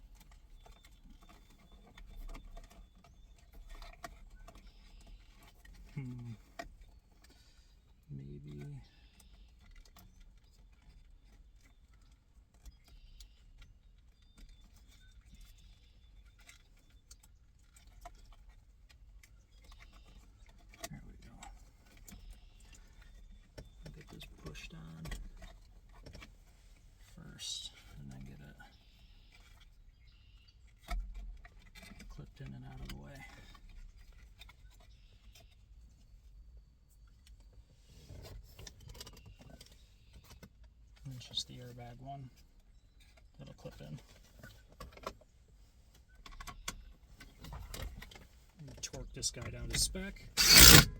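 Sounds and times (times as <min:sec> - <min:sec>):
small parts clicking and rattling: 0:49.7 - 0:50.9.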